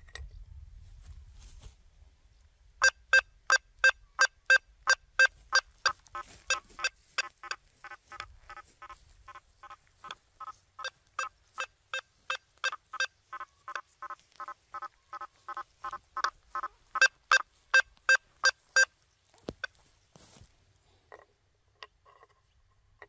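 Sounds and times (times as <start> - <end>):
metal detector beeps: 2.8 - 7.6, 10.0 - 14.9, 15.5 - 19.0.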